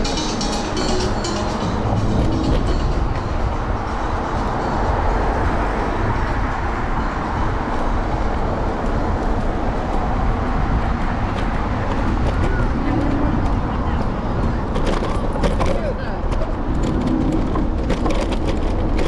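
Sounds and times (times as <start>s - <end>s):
wind rushing: 0.0s - 14.7s
city traffic: 0.0s - 19.0s
road rumble: 0.0s - 19.0s
wind on microphone: 1.6s - 19.0s.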